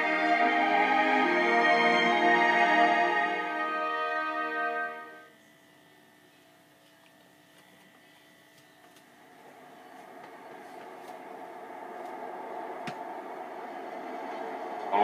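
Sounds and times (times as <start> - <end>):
held music chord: 0.0 - 5.3
noisy background ambience: 0.0 - 15.0.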